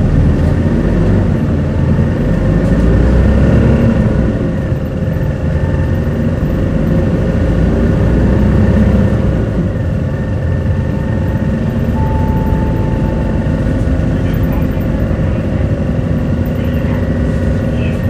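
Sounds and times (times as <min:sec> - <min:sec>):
bus engine and road drone: 0:00.0 - 0:18.0
constant whine: 0:09.6 - 0:18.0
steady high tone: 0:11.9 - 0:16.1.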